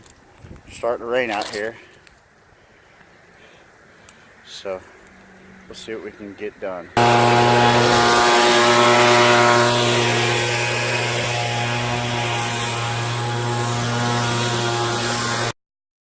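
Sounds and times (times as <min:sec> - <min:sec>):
loud motor drone: 0:07.0 - 0:15.6.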